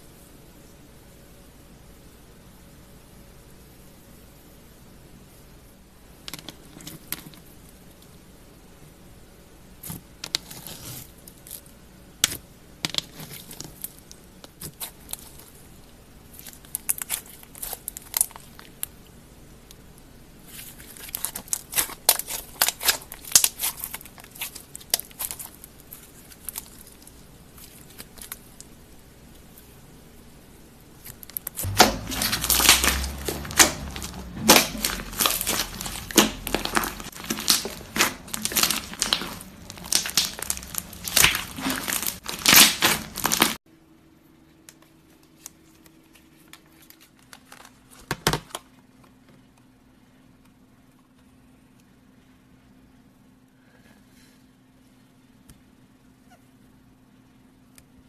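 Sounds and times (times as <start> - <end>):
slime crackling squeezed by hand: 20.5 - 28.4, 31.4 - 43.6.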